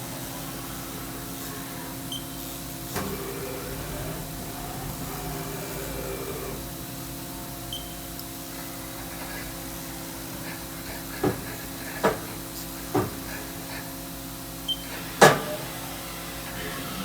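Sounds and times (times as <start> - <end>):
milling machine humming: 0.0 - 17.0
mechanical clunks and whirs: 2.0 - 9.8, 14.6 - 17.0.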